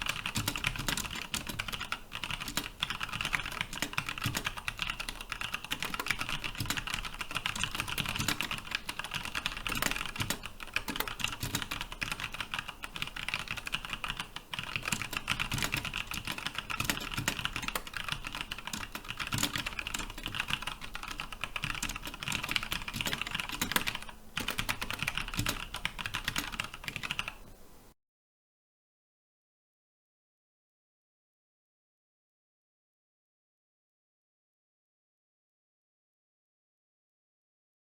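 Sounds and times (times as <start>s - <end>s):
mechanical keyboard typing: 0.0s - 27.4s.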